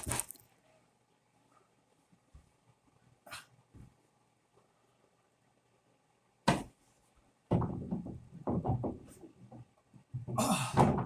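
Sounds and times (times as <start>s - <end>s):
sliding barn door knocking and clunking: 7.5s - 11.0s.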